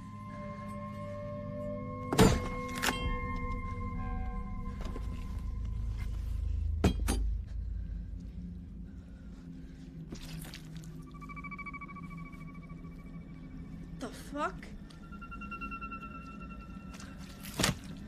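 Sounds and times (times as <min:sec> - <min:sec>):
steady ringing tone: 0:00.0 - 0:08.1, 0:11.1 - 0:14.0, 0:14.9 - 0:17.3
low rumbling drone: 0:00.0 - 0:18.0.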